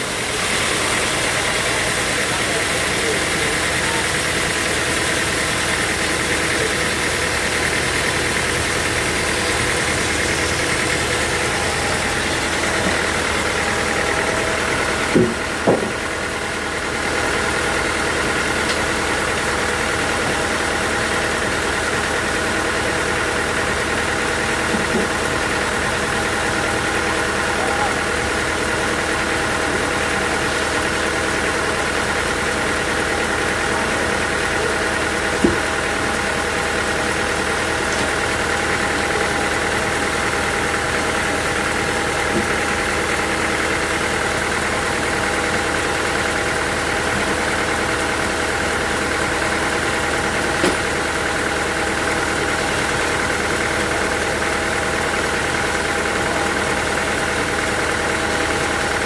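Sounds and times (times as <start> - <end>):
sawmill machinery humming: 0.0 - 59.0
sharp knocks: 15.1 - 16.0.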